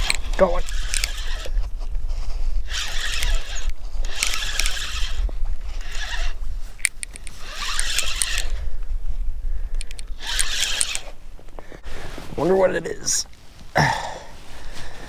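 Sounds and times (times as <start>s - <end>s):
fishing reel whirring: 0.0s - 11.4s.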